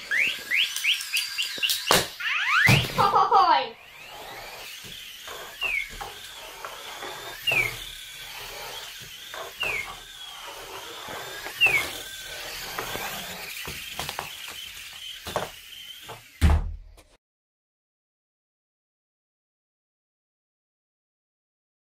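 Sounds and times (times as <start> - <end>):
electric motors whining: 0.0 - 17.2
short falling squeaks: 0.1 - 3.1
loud thump: 16.4 - 16.9.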